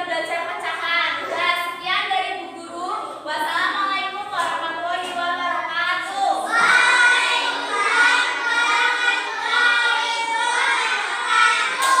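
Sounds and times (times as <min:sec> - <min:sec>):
children singing in unison: 0:06.5 - 0:12.0.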